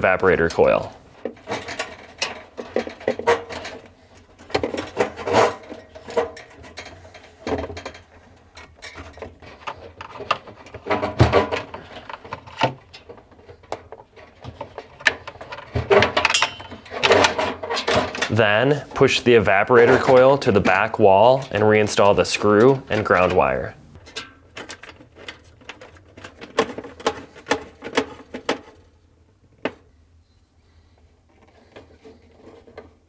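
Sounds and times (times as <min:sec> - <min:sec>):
clicks knocks and scraping: 0:00.6 - 0:28.9, 0:31.3 - 0:33.0
metallic ringing: 0:16.3 - 0:17.0.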